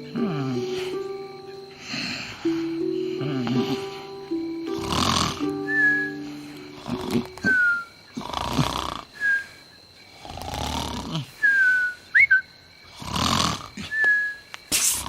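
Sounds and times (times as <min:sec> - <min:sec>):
cartoon snoring with whistle: 0:04.7 - 0:05.4, 0:06.8 - 0:09.6, 0:10.2 - 0:15.0.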